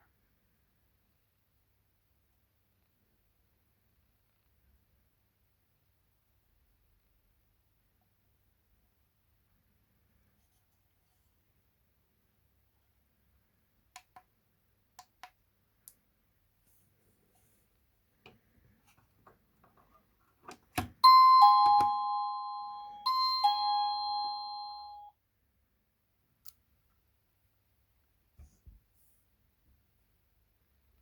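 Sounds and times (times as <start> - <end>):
doorbell ding-dong chime: 21.0 - 25.1.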